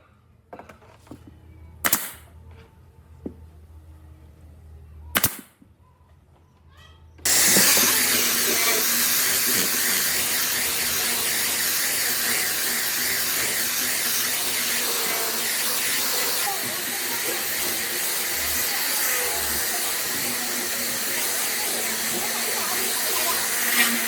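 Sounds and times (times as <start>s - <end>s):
sharp crack: 1.8s - 2.3s, 5.1s - 5.6s
compressed air hissing: 7.3s - 24.0s.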